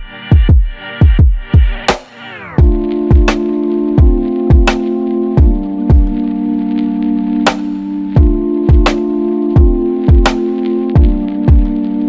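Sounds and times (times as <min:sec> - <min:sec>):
electronic music: 0:00.0 - 0:12.0
deep kick drum hits: 0:02.6 - 0:03.4, 0:05.4 - 0:06.1, 0:08.2 - 0:09.0
held synth chord: 0:02.6 - 0:12.0.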